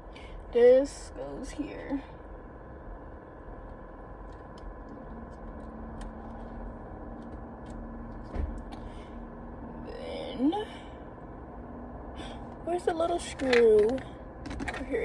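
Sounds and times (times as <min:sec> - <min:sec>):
steady background hum: 0:00.0 - 0:15.0
faint clicks and handling noises: 0:03.6 - 0:08.8, 0:13.3 - 0:15.0
low thump: 0:08.3 - 0:08.7.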